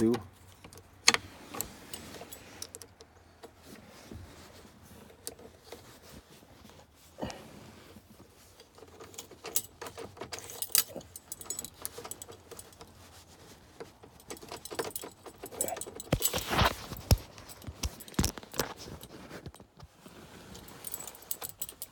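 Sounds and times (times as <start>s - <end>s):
metal clicks and rattles: 0.0s - 3.6s, 8.6s - 13.0s, 13.7s - 19.8s, 20.6s - 21.9s
keys jangling on a ring: 8.7s - 13.0s, 13.9s - 19.8s, 20.6s - 21.9s.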